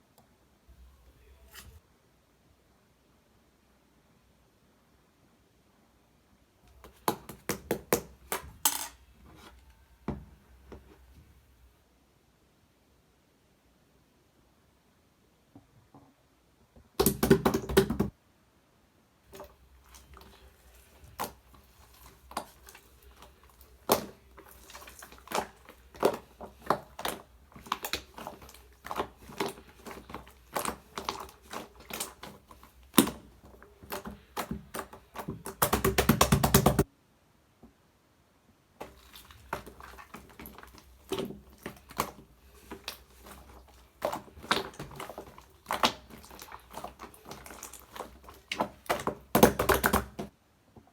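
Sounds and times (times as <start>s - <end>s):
slime squishing by hand: 6.7s - 11.5s, 17.0s - 18.2s, 19.2s - 36.9s, 38.8s - 50.4s.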